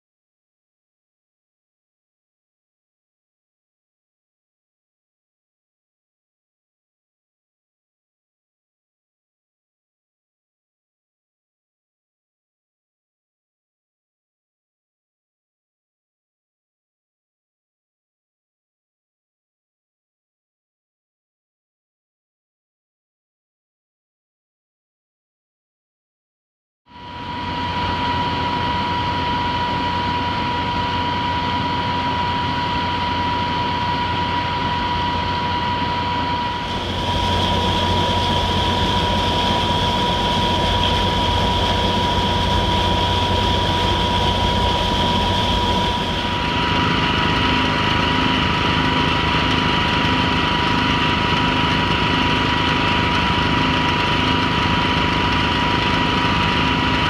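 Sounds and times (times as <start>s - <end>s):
machinery high whine: 26.9s - 57.0s.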